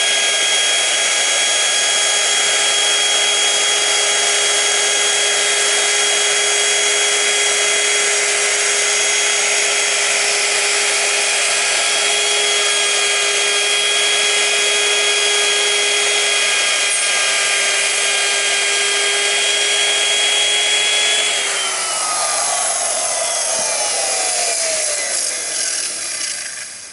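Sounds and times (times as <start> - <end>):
wood router whining: 0.0 - 26.9
motor coasting down: 19.4 - 26.9.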